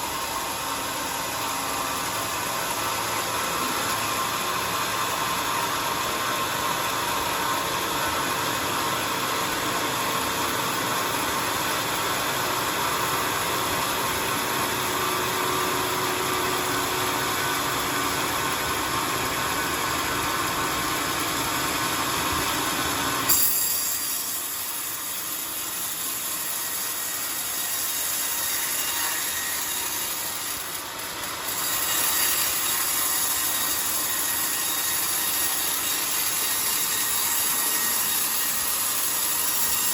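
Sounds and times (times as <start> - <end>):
bandsaw cutting wood: 13.8 - 39.9.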